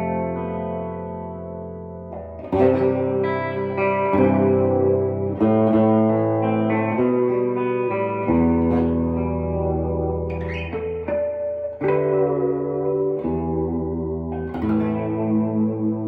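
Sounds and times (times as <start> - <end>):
electric guitar chords strummed: 0.0 - 16.0.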